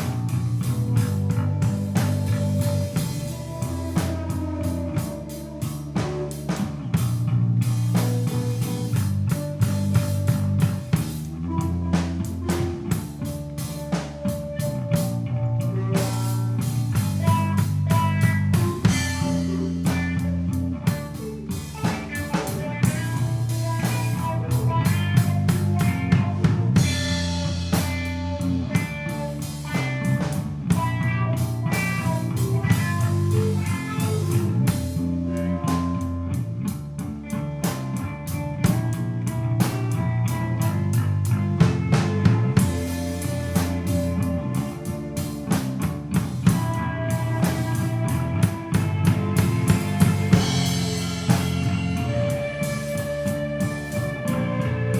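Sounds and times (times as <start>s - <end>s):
bass guitar: 0.0s - 54.9s
drum kit steady beat: 0.0s - 54.9s
electric guitar: 0.0s - 54.9s
drum kit hits: 46.0s - 53.7s.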